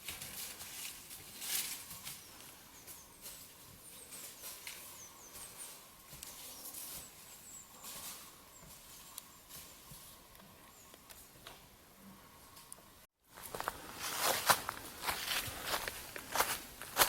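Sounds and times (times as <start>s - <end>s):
small birds chirping: 0.9s - 11.4s
footsteps crunching: 13.3s - 17.0s.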